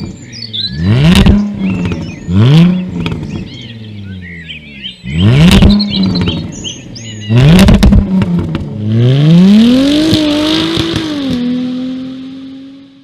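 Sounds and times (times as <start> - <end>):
car engine revving: 0.0 - 13.0
exhaust pops and crackles: 1.0 - 3.6, 5.4 - 8.8, 10.0 - 11.5.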